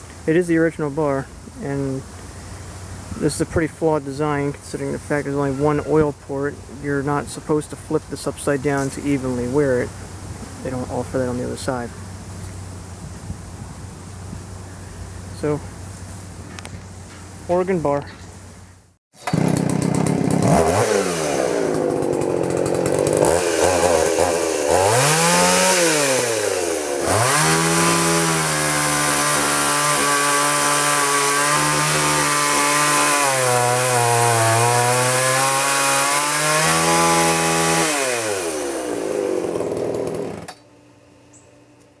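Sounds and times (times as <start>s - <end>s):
chainsaw cutting wood: 19.2s - 40.6s.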